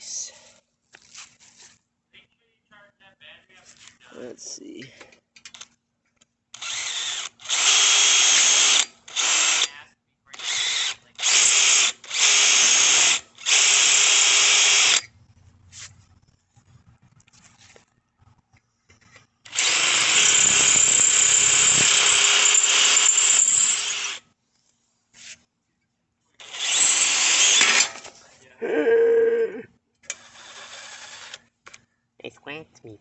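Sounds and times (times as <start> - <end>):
power drill drilling metal: 6.6 - 9.7, 10.4 - 15.1, 19.5 - 24.2, 26.4 - 28.1, 30.0 - 31.4.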